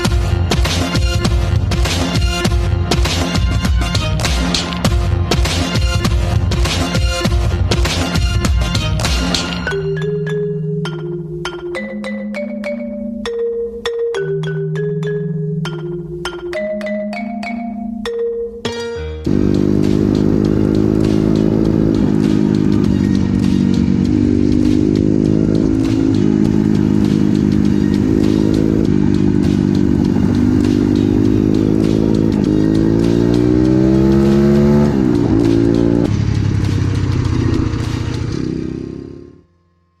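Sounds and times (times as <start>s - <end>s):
vehicle engine running: 19.3s - 39.4s.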